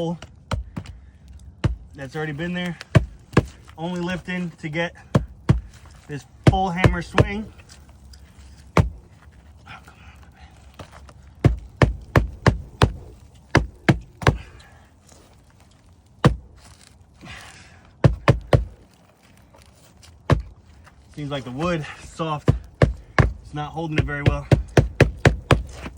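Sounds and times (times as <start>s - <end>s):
hammer striking a nail: 11.4s - 14.5s, 18.0s - 18.8s, 22.5s - 25.9s.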